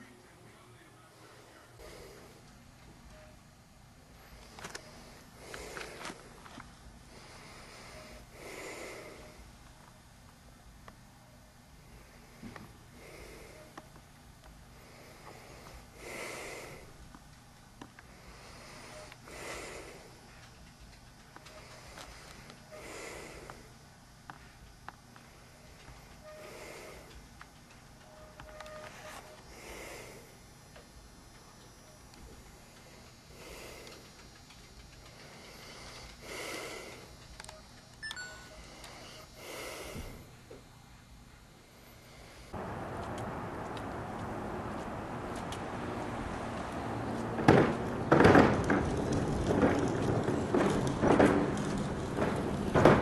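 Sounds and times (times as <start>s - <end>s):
low room hum: 0.0s - 53.0s
person breathing loudly: 7.1s - 9.4s, 14.7s - 17.0s, 18.1s - 20.4s, 21.5s - 23.8s, 32.6s - 34.3s, 35.1s - 37.2s, 38.6s - 40.4s.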